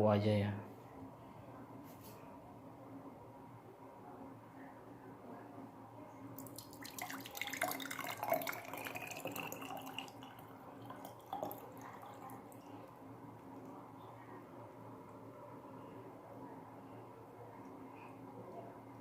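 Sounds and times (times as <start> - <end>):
liquid trickling into container: 6.4 - 12.9.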